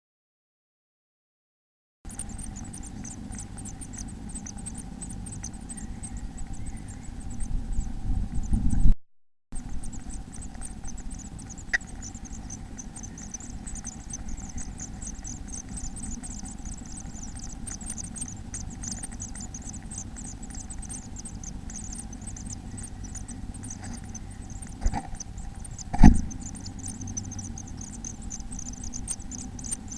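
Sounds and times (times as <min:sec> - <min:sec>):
baby birds cheeping: 0:02.1 - 0:08.9, 0:09.6 - 0:29.9
steady low hum: 0:02.1 - 0:09.0, 0:09.6 - 0:29.9.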